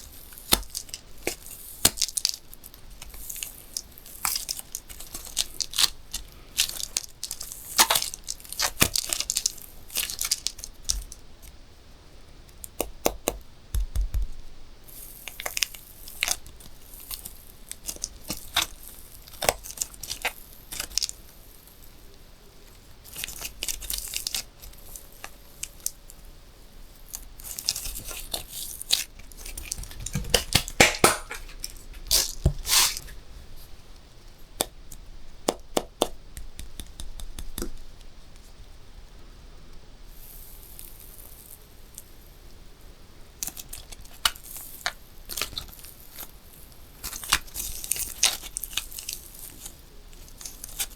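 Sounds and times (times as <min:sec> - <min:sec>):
balloon rubbing and crinkling: 0:29.4 - 0:33.2
balloons popping: 0:29.9 - 0:33.1.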